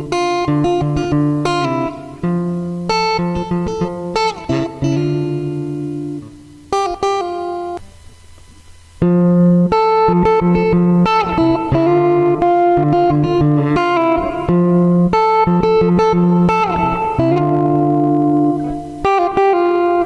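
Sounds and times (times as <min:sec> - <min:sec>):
electric guitar chords and riffs: 0:00.0 - 0:20.0.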